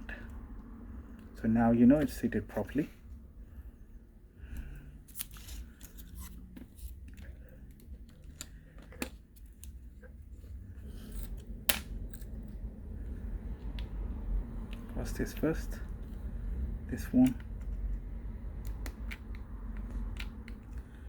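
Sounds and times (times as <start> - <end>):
small clicks of phone parts and tools: 5.1 - 10.2, 18.6 - 21.0.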